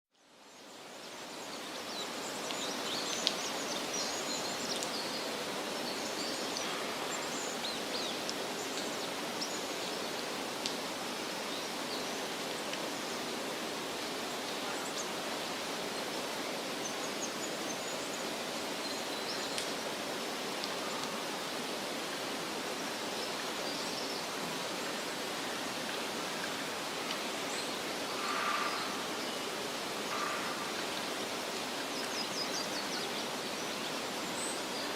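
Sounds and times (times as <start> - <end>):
waterfall rushing: 0.9 - 34.9.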